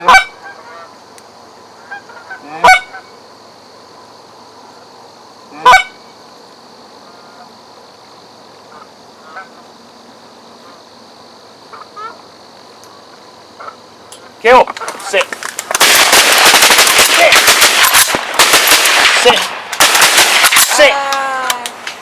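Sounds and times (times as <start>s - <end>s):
goose honks: 0.0s - 0.9s, 1.8s - 3.1s, 5.5s - 6.0s, 11.7s - 12.2s.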